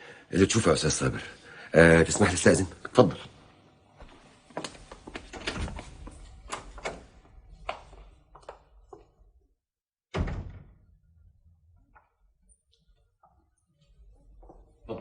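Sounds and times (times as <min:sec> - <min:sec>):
loud door thunk: 0:10.1 - 0:10.8.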